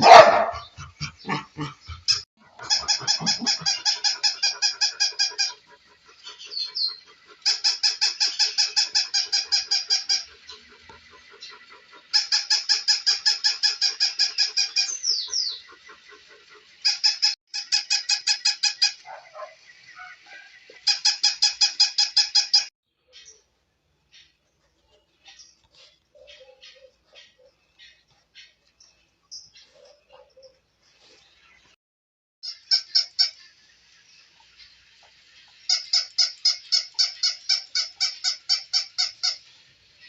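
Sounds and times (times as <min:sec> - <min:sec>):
toy dog electronic yapping: 0:00.0 - 0:00.6, 0:02.5 - 0:05.6.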